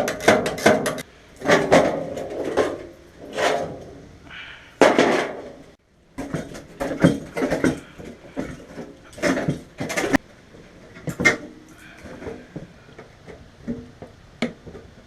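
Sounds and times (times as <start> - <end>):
metal clanking and knocking: 0.0 - 3.9, 4.8 - 10.2.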